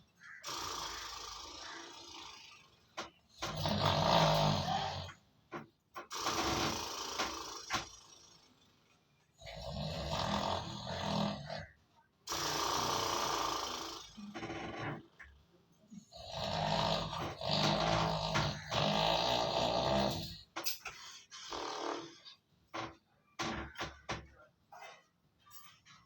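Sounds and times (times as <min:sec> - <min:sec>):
man snoring loudly: 0:00.4 - 0:02.6, 0:03.3 - 0:05.2, 0:06.1 - 0:08.2, 0:09.4 - 0:11.7, 0:12.3 - 0:14.4, 0:16.0 - 0:20.6, 0:21.4 - 0:22.3.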